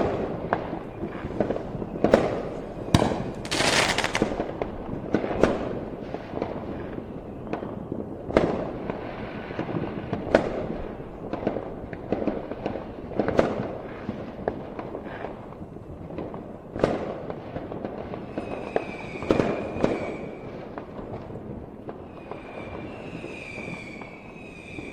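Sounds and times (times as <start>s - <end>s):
fireworks bangs: 0.0s - 24.9s
fireworks crackling: 0.0s - 24.9s
high whistling fireworks: 0.0s - 24.9s.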